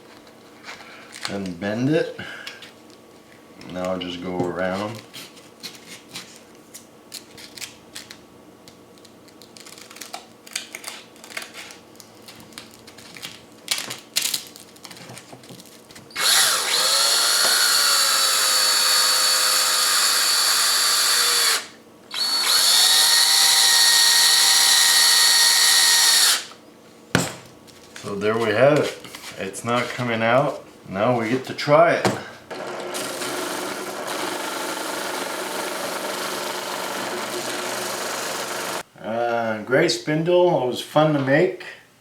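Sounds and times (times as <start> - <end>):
electric drill whining: 16.1 - 26.5, 32.5 - 38.8.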